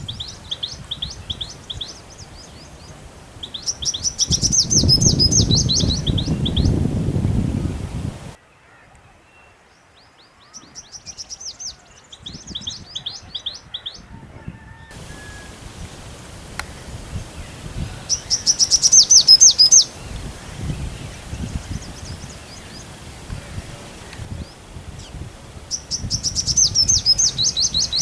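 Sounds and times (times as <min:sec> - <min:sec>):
small bird chirping: 0:00.0 - 0:06.8, 0:18.1 - 0:22.9, 0:24.3 - 0:28.0.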